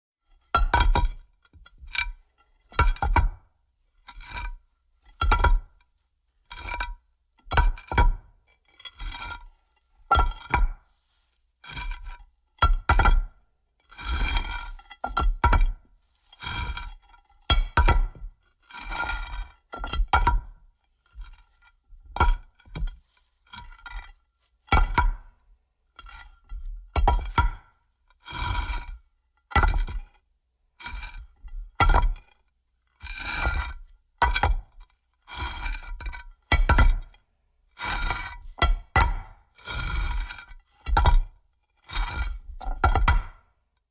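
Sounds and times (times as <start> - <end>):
stone scraping: 4.0 - 5.7, 6.4 - 10.7, 11.6 - 25.1, 26.0 - 27.6, 30.8 - 32.3, 32.9 - 37.2, 37.8 - 43.4.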